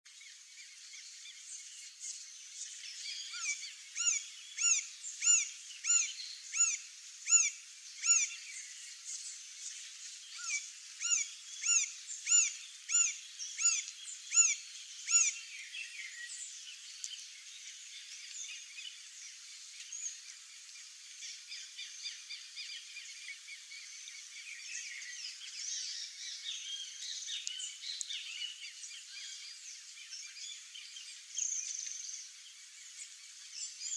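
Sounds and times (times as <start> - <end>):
woodpecker calling: 3.4 - 8.3, 10.4 - 15.3.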